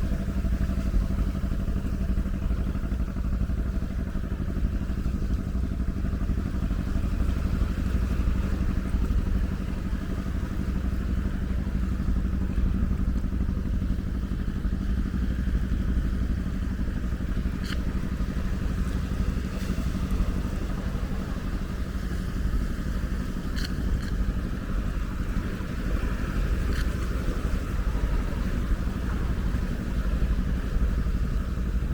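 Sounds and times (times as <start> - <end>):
ocean waves breaking: 0.0 - 31.9
faint ticks: 17.4 - 18.1, 23.2 - 24.5, 26.5 - 27.5.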